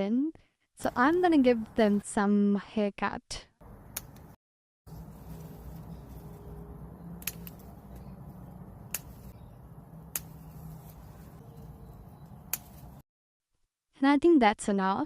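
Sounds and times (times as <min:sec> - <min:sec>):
scissors snipping stems: 0:03.6 - 0:04.3, 0:04.9 - 0:13.0.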